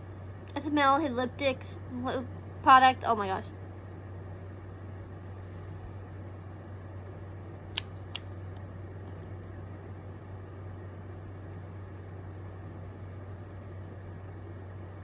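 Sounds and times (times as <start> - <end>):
room hum and hiss: 0.0 - 15.0
small sharp clicks: 7.7 - 8.7.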